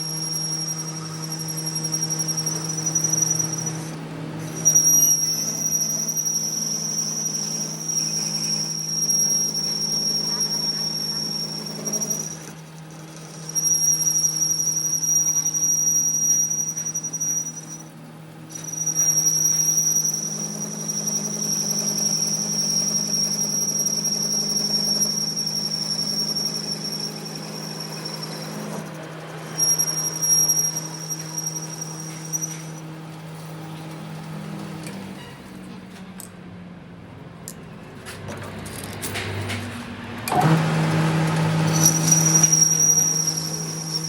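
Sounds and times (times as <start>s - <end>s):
cutting tool squealing on metal: 0.0s - 35.7s, 40.3s - 44.0s
machine humming: 38.7s - 44.0s.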